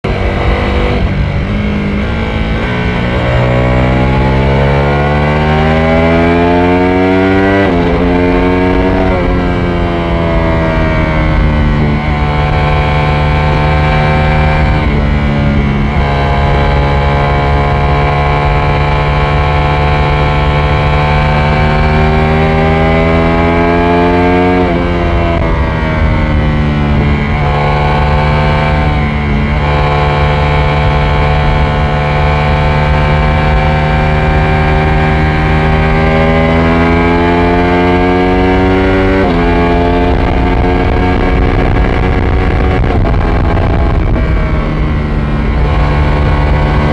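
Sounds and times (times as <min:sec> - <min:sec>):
motorcycle engine pulling hard: 0:00.0 - 0:46.9
steady low rush: 0:39.7 - 0:46.9.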